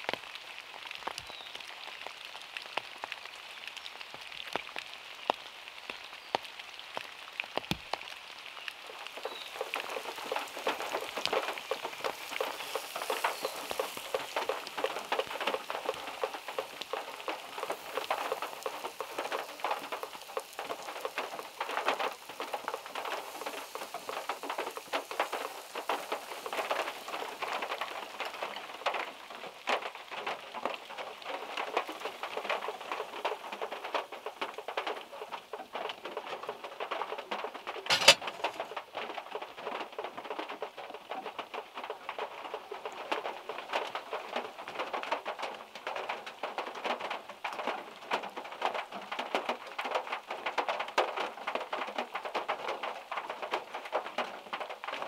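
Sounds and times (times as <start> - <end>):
rain pattering on car roof: 0.0 - 55.0.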